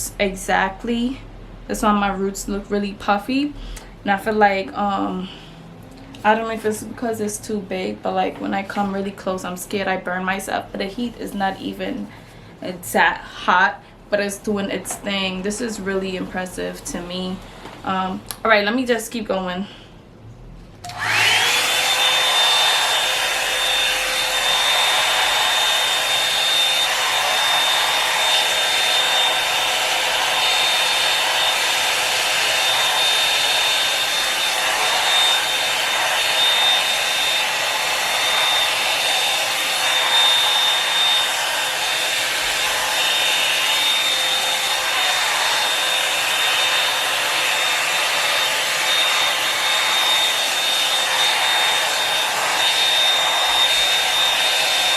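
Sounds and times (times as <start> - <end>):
hot-air brush fan whining: 20.8 - 54.9.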